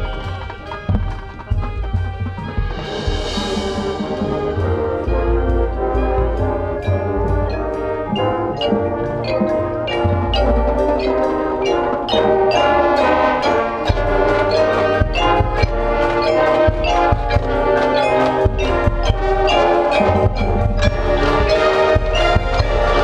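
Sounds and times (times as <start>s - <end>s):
drum strikes: 0.0s - 23.0s
brass playing sustained chords: 2.2s - 23.0s.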